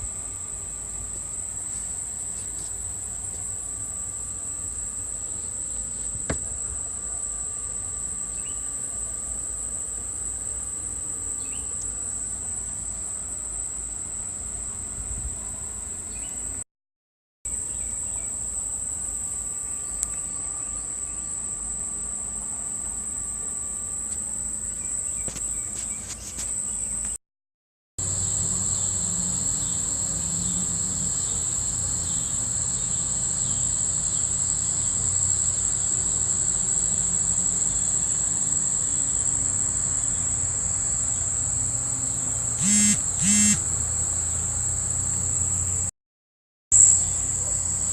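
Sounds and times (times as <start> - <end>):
crickets trilling: 0.0 - 16.6, 17.5 - 27.2, 28.0 - 45.9, 46.7 - 47.9.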